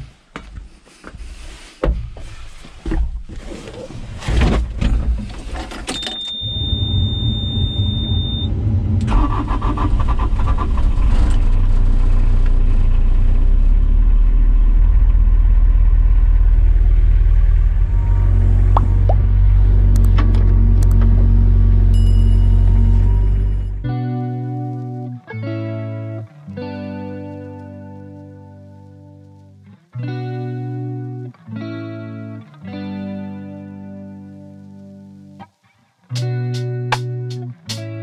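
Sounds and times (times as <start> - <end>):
steady beep: 6.0 - 8.6, 21.9 - 23.8
diesel engine starting and running: 6.0 - 23.9.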